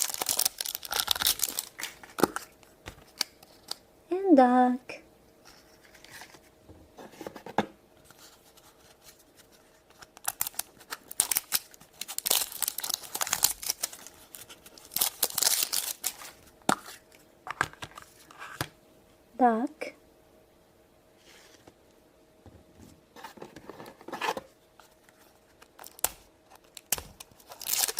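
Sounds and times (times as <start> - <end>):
plastic packaging tearing and crinkling: 0.0 - 3.8, 9.9 - 16.4, 25.7 - 27.9.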